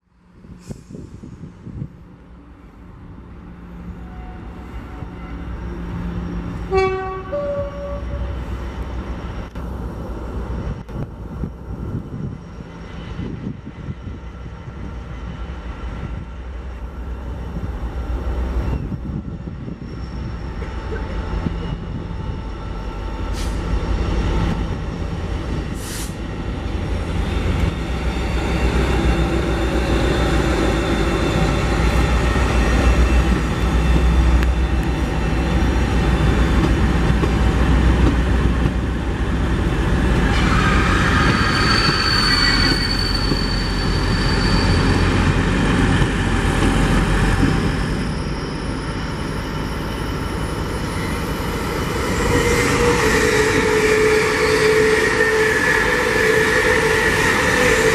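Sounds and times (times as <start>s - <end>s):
train rumble: 0.2s - 57.9s
train hiss: 0.5s - 1.6s, 23.2s - 23.9s, 25.7s - 26.3s.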